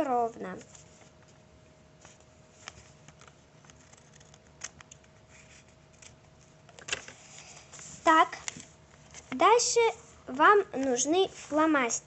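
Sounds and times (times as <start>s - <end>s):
paper being handled: 2.0s - 9.4s.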